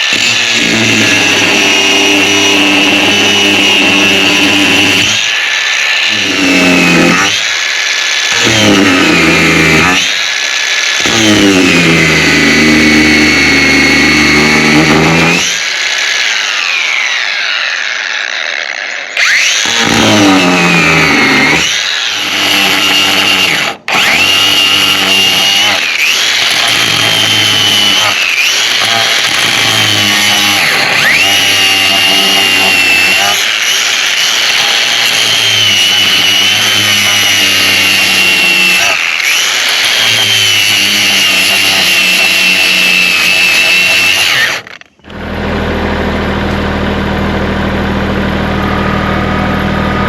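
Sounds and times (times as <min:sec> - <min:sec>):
angle grinder cutting metal: 0:00.0 - 0:50.0.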